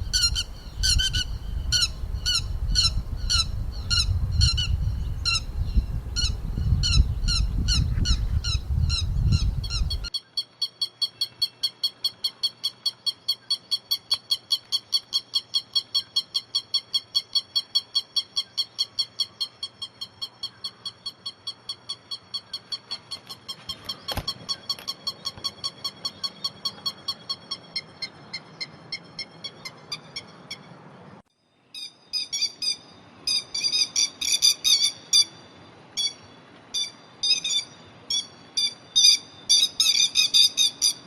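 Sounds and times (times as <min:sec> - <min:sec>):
low wind rumble: 0:00.0 - 0:10.1
lapwing calling: 0:00.0 - 0:30.8, 0:31.8 - 0:41.0.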